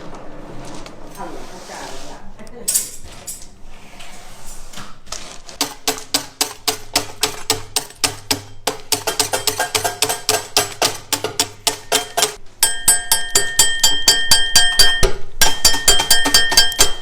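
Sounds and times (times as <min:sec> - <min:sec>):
music with wood block beat: 0:05.6 - 0:17.0.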